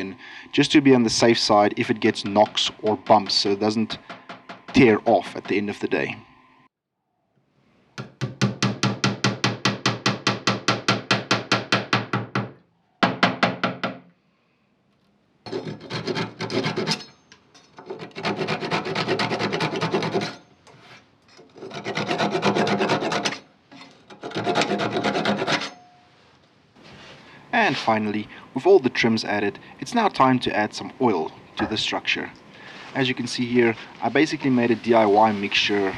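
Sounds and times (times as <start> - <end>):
hand tools rasping wood: 15.5 - 16.9, 17.8 - 20.4, 21.5 - 23.4, 24.1 - 25.7.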